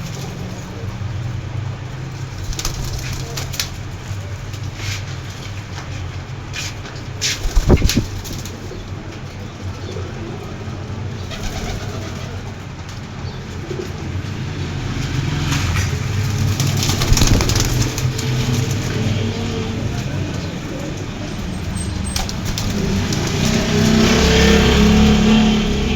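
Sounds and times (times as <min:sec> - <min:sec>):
pigeons cooing: 0:07.4 - 0:25.9.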